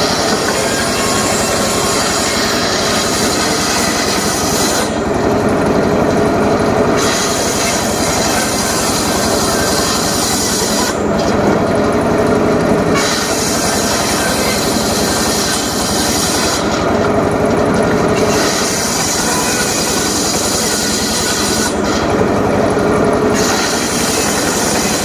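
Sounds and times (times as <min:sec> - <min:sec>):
circular saw cutting wood: 0:00.0 - 0:25.0.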